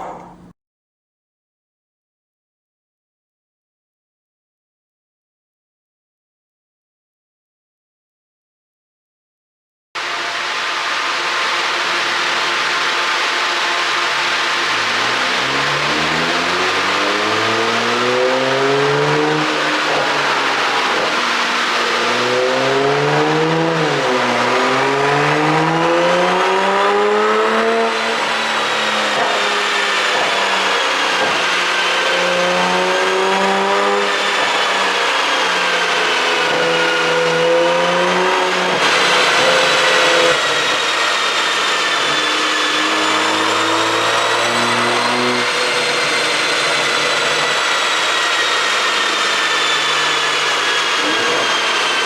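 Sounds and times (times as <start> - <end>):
car engine revving through gears: 10.4 - 52.0.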